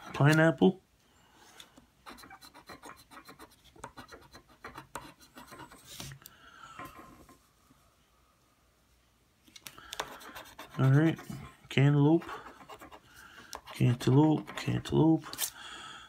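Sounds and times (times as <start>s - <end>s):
scratching lottery ticket: 10.1s - 11.5s, 12.1s - 14.8s.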